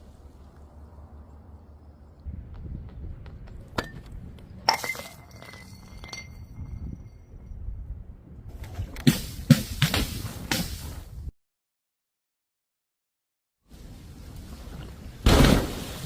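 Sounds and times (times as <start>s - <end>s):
glass clinks: 4.7s - 7.2s.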